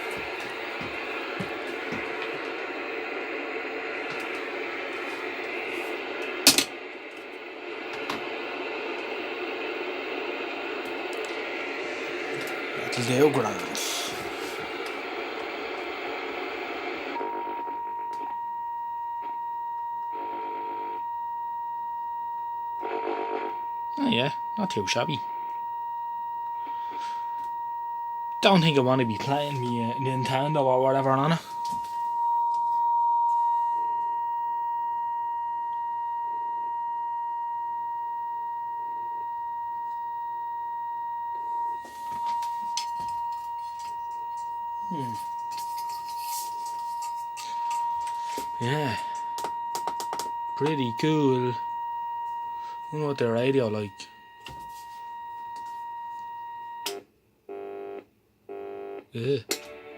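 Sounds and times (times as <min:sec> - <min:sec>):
steady high test tone: 0:00.0 - 0:15.6, 0:23.6 - 0:36.3, 0:39.2 - 0:56.9
tv static hiss: 0:00.0 - 0:17.8, 0:22.8 - 0:25.5, 0:28.4 - 0:32.1, 0:44.8 - 0:49.2, 0:49.8 - 0:51.6, 0:52.9 - 0:54.1, 0:59.2 - 0:59.9.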